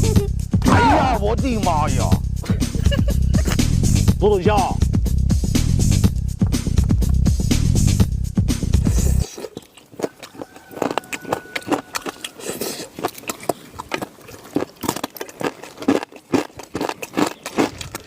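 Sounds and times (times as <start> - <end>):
background music: 0.0 - 9.2
crunchy chewing of food: 8.8 - 18.0.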